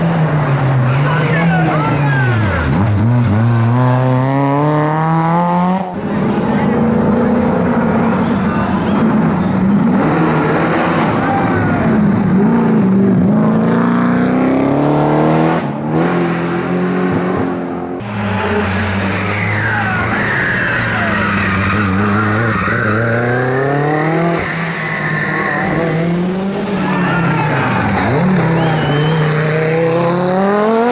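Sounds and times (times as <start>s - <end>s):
rally car engine revving: 0.0s - 30.9s
tyres squealing: 18.3s - 30.2s.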